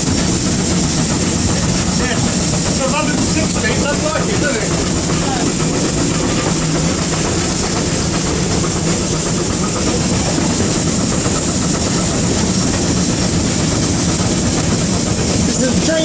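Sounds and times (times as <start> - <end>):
locomotive running gear and rail noise: 0.0 - 16.0
steam hiss: 0.0 - 16.0.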